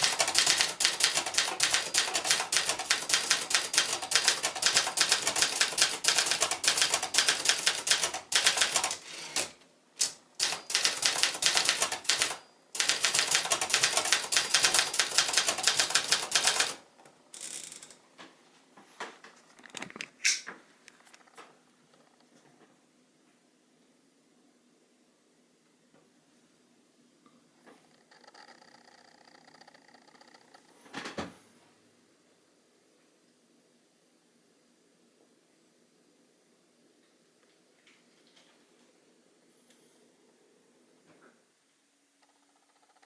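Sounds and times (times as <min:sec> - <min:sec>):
manual typewriter typing: 0:00.0 - 0:18.0
faint clicks and handling noises: 0:17.0 - 0:23.4.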